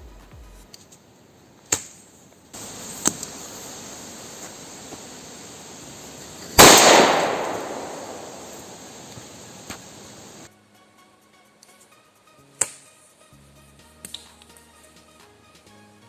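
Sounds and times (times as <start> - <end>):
grenade exploding with sharp bang: 6.4 - 10.5.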